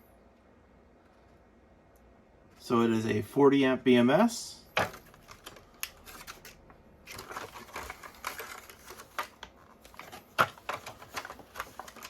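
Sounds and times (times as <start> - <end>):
hands handling battery pack: 4.8 - 12.0.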